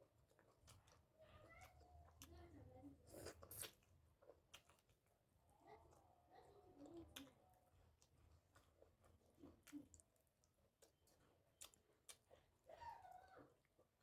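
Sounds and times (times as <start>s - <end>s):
person chewing: 3.0s - 5.0s, 7.9s - 12.7s.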